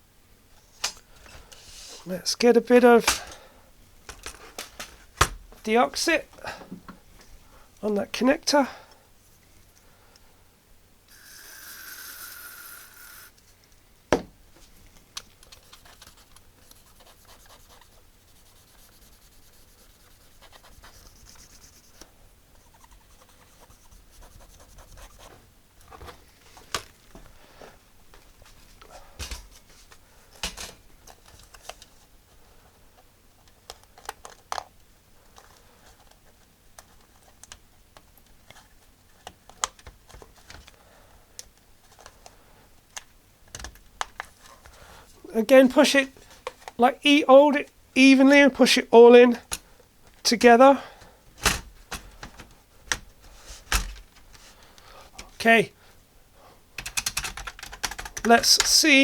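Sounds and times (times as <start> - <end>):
keyboard parts handled: 2.8 - 7.0, 28.5 - 32.0, 33.4 - 34.7, 42.9 - 44.8, 51.3 - 55.4, 56.8 - 59.0
aerosol spray hiss: 11.1 - 13.4.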